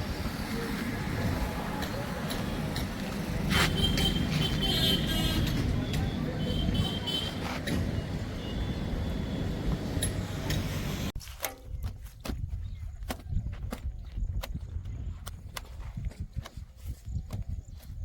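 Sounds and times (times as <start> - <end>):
diesel engine rumbling: 0.0 - 11.2.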